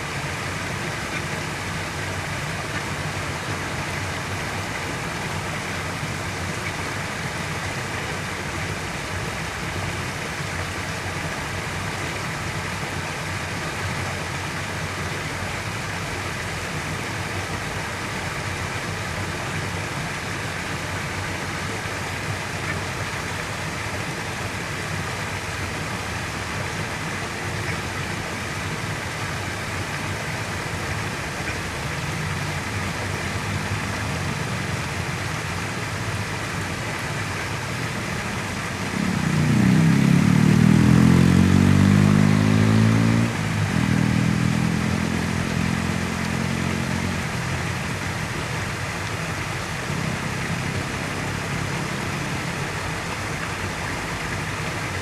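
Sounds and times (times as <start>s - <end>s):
road traffic hum: 0.0s - 55.0s
vehicle engine accelerating: 38.6s - 47.8s.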